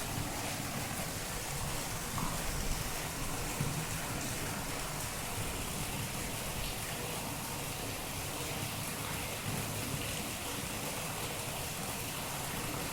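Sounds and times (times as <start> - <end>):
rain falling: 0.0 - 7.6.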